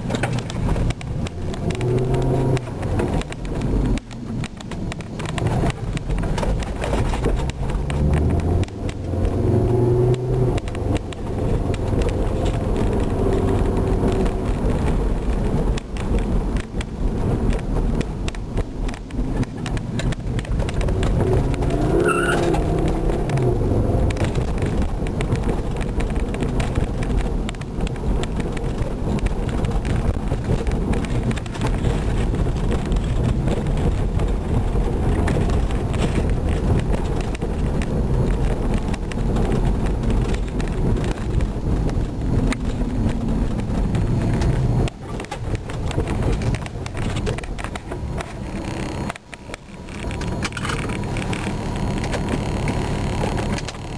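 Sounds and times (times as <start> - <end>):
car engine running: 0.0 - 53.9
road noise: 0.0 - 53.9
short higher tone: 22.0 - 22.6.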